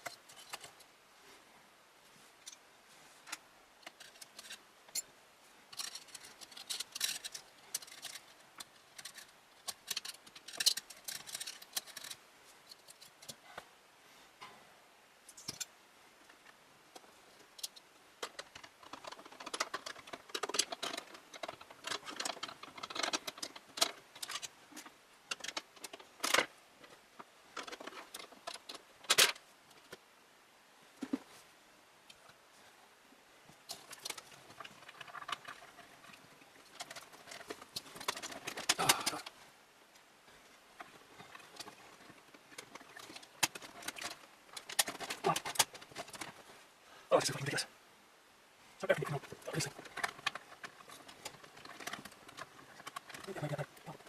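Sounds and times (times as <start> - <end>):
plastic and metal parts clicking: 5.7 - 13.4, 17.6 - 26.5, 33.7 - 39.4, 40.8 - 46.4, 49.1 - 54.0.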